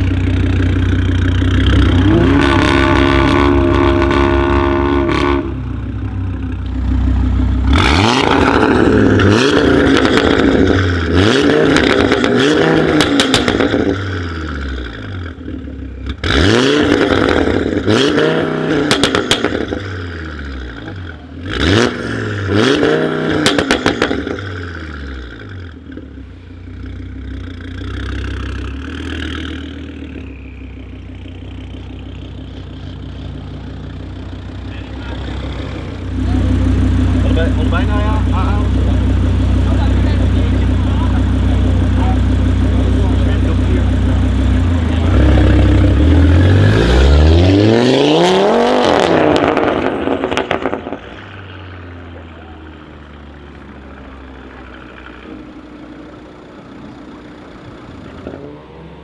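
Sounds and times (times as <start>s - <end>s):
car engine revving: 0.0s - 59.0s
exhaust crackles and pops: 7.6s - 14.0s, 18.7s - 19.8s, 23.4s - 24.4s, 48.8s - 58.4s.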